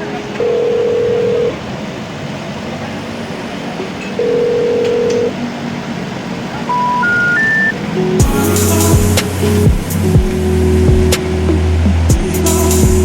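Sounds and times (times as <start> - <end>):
steady background noise: 0.0 - 13.0
long steady telephone beep: 0.4 - 1.6, 4.1 - 5.4, 6.7 - 7.8
rising three-tone signal: 6.7 - 11.5.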